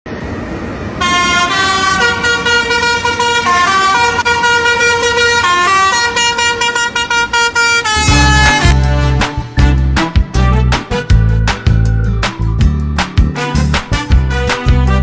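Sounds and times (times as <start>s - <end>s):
bright electronic tune: 8.0s - 10.1s.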